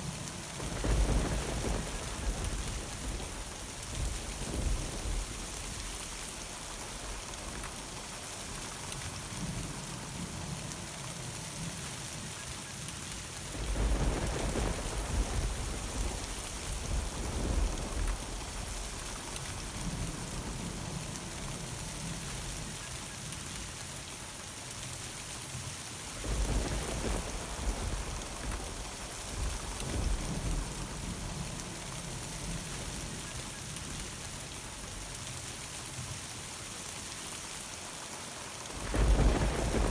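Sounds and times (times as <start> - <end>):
steady rain: 0.0 - 39.9
thunder rumbling: 0.6 - 7.5, 13.6 - 21.9, 26.2 - 33.2, 38.7 - 39.9.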